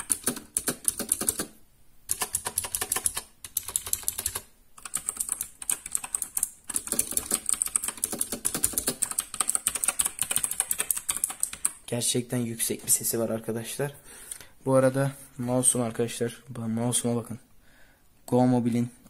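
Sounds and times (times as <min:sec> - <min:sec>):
fast typing on mechanical keyboard: 0:00.0 - 0:11.8.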